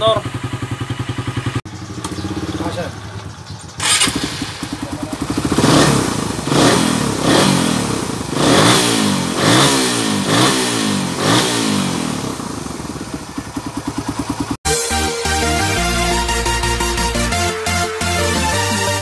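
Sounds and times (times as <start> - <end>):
motorcycle engine revving: 0.0 - 14.6.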